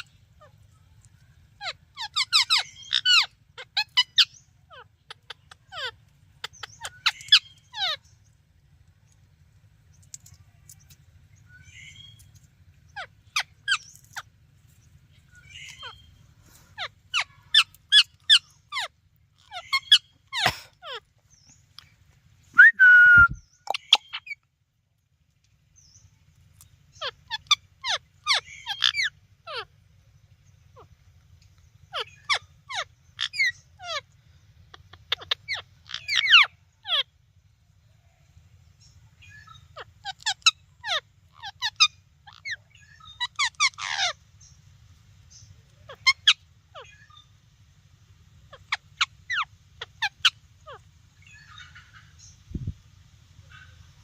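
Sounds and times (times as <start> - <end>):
parrot chirping: 1.6 - 8.0, 12.9 - 14.3, 15.2 - 16.2, 16.8 - 21.0, 26.6 - 29.7, 31.9 - 34.0, 34.7 - 37.1, 39.2 - 44.6, 45.3 - 47.3, 48.5 - 52.4
parrot whistle: 22.6 - 23.4.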